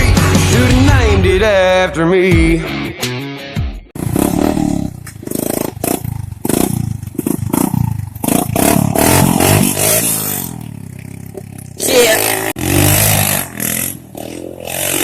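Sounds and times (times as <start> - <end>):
atv engine revving: 4.0 - 15.0.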